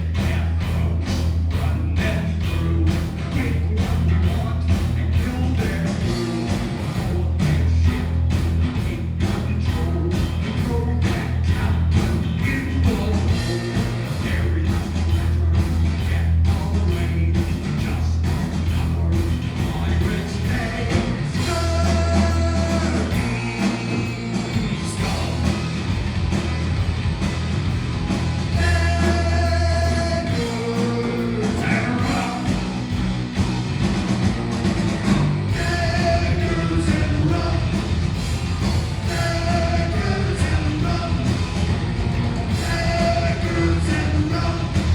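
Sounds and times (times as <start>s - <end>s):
bass guitar: 0.0s - 44.9s
distorted guitar: 0.0s - 44.9s
drums with steady beat: 0.0s - 44.9s
person singing: 35.5s - 37.8s, 39.0s - 41.3s.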